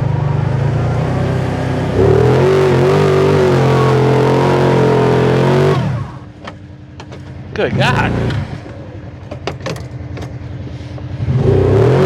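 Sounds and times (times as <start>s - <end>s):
engine revving under full throttle: 0.0s - 6.3s, 11.2s - 12.0s.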